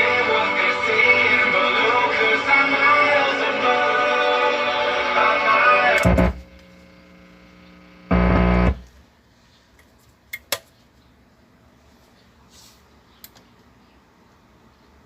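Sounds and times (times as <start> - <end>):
music through speakers: 0.0 - 6.4
low mains hum: 1.0 - 15.0.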